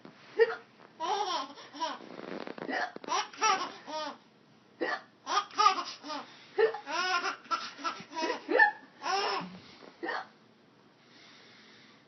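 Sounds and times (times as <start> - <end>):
baby laughing: 1.0 - 2.0, 3.1 - 4.2, 5.3 - 9.5
woman hiccuping: 4.8 - 5.1, 10.0 - 10.4.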